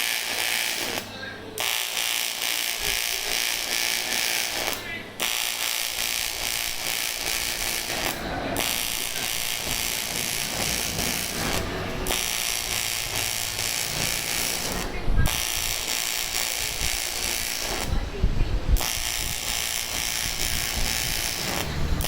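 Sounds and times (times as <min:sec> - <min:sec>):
welding arc buzzing: 0:00.0 - 0:22.0.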